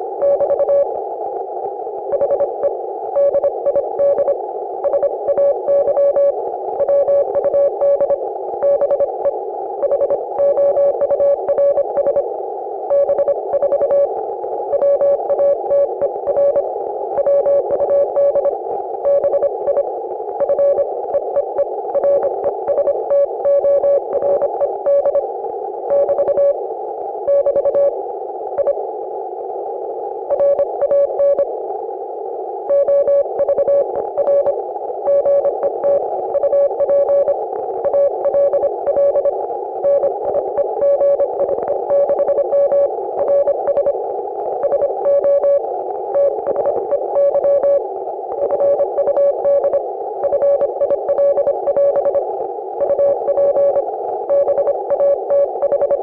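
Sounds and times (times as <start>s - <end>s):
receiver hiss: 0.0s - 56.0s
morse code beeps: 0.2s - 0.9s, 2.1s - 12.2s, 12.9s - 14.1s, 14.7s - 25.2s, 25.9s - 26.6s, 27.3s - 28.0s, 28.6s - 28.8s, 30.3s - 31.5s, 32.7s - 44.0s, 44.6s - 47.8s, 48.4s - 52.2s, 52.8s - 56.0s.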